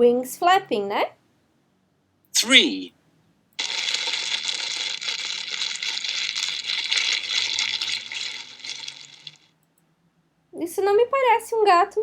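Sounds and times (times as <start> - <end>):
fire crackling: 3.6 - 9.5.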